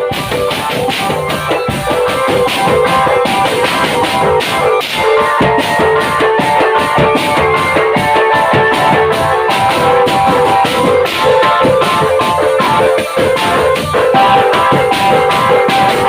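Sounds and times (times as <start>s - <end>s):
drums beating fast rhythm: 0.0s - 16.0s
live band music: 0.0s - 16.0s.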